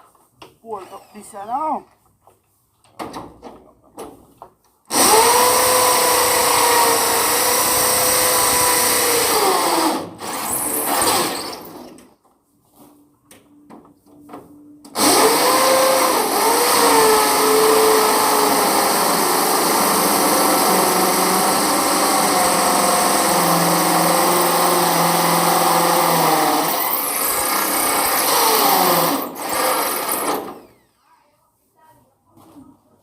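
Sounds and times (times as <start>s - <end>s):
power drill running under load: 0.8s - 1.4s, 4.9s - 12.0s, 15.0s - 31.1s.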